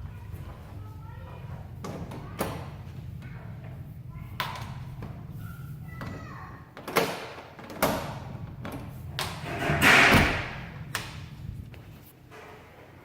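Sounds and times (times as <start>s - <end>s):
sharp knocks and thuds: 9.2s - 11.2s.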